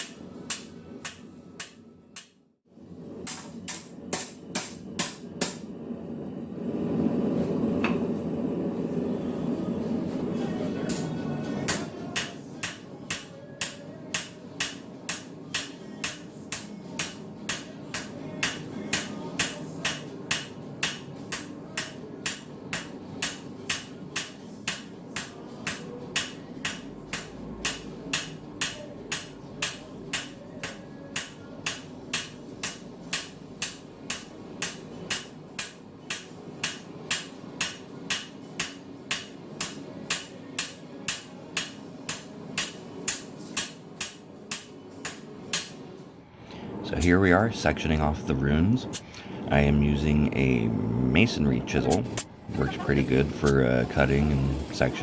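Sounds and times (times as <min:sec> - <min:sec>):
hammer striking steel bar: 0:00.0 - 0:02.4, 0:03.3 - 0:05.6, 0:11.7 - 0:45.8.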